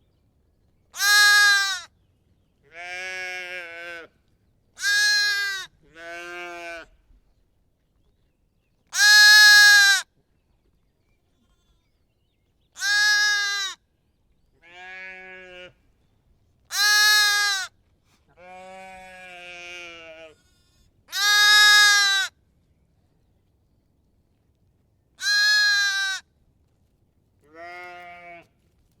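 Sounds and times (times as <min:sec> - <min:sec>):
sheep bleating: 0:01.0 - 0:01.8, 0:04.8 - 0:06.9, 0:14.6 - 0:15.8, 0:18.4 - 0:22.3, 0:25.2 - 0:26.2, 0:27.5 - 0:28.5.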